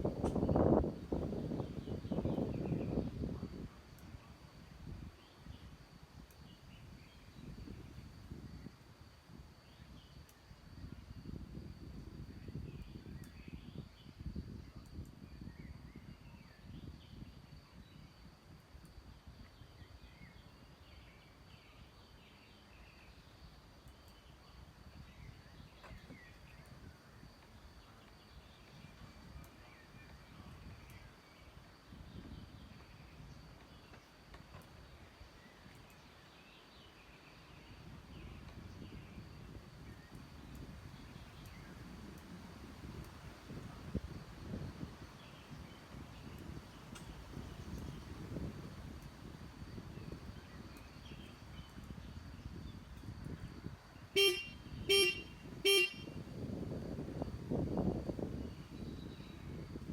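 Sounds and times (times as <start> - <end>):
vehicle horn beeps: 54.2 - 56.2.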